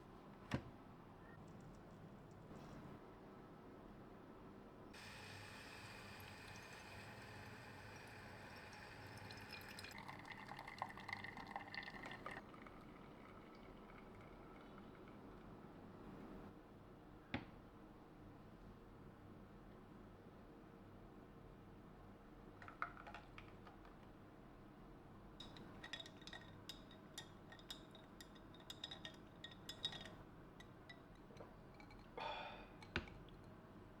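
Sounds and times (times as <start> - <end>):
liquid pouring into a cup: 5.0 - 15.6
small glass clinks: 25.4 - 32.2.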